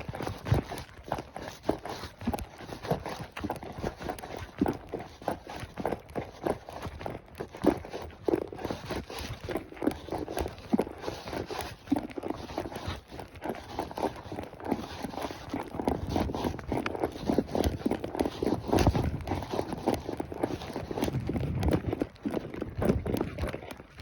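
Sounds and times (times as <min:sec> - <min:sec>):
horse hooves striking ground: 0:00.0 - 0:24.0.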